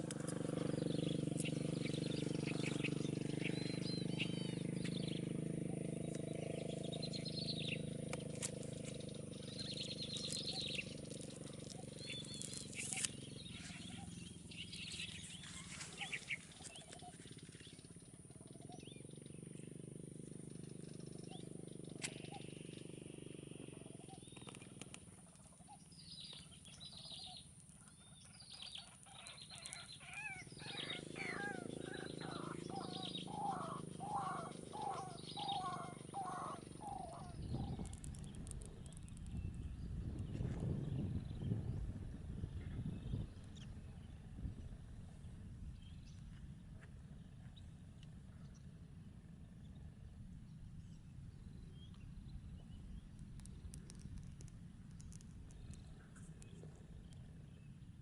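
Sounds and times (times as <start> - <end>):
wild birds calling: 0.0 - 41.5
low background rumble: 0.0 - 58.0.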